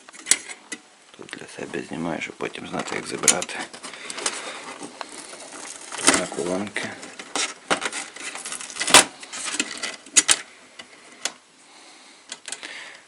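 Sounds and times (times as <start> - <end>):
plastic and metal parts clicking: 5.0 - 11.4.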